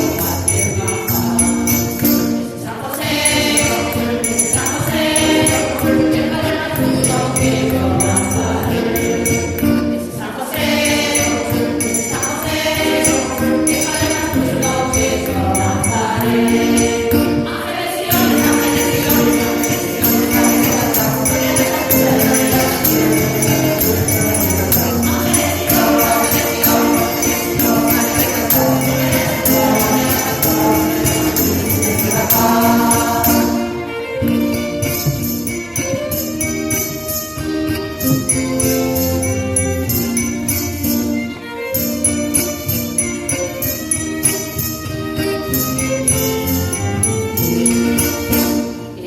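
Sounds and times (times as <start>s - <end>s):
choir singing a carol: 0.0s - 49.0s
jingling percussion: 0.0s - 49.0s.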